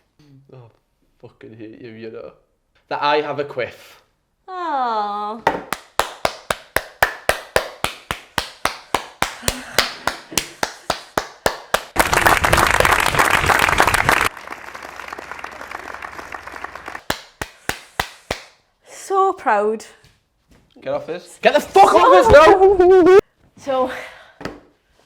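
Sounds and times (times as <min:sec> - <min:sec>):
hands clapping: 0:05.6 - 0:18.6
applause: 0:05.7 - 0:18.5.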